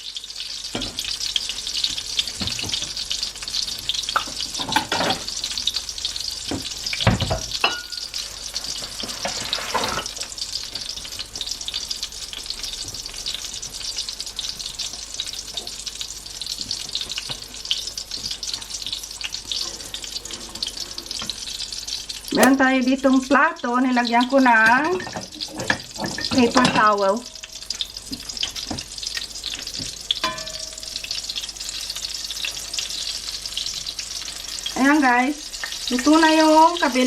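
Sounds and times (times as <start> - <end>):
oil sizzling in a pan: 0.0 - 22.6, 23.4 - 37.0
utensil knocking and scraping pan: 22.4 - 22.6.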